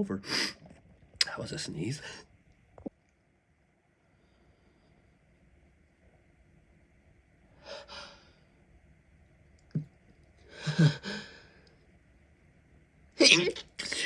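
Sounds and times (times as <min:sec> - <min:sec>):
breathy breaths: 0:04.0 - 0:05.4, 0:07.6 - 0:08.7, 0:10.4 - 0:11.8
stifled sneeze: 0:13.2 - 0:14.0.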